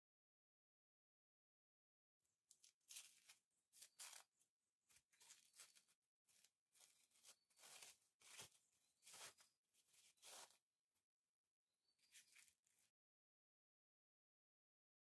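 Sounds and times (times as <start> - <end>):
faint scraping strokes: 6.8 - 10.6.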